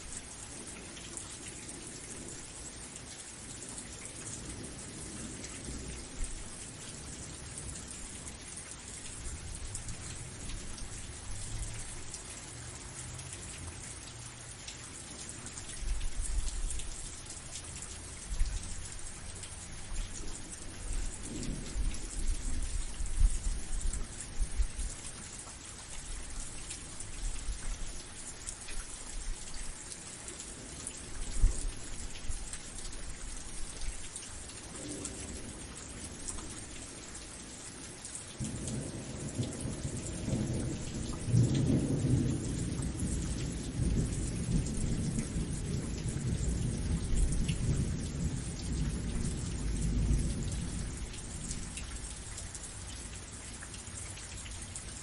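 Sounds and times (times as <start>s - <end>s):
rain falling: 0.0s - 55.0s.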